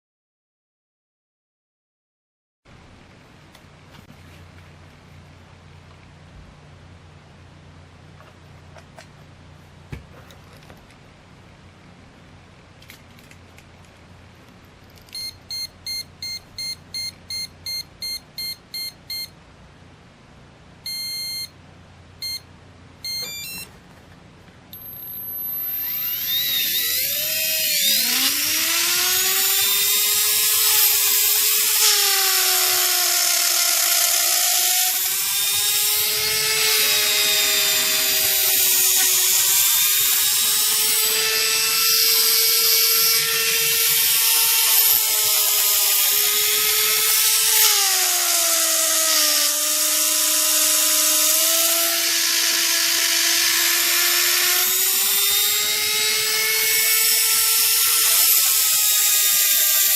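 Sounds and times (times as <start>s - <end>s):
electric motor whine: 24.8s - 59.9s.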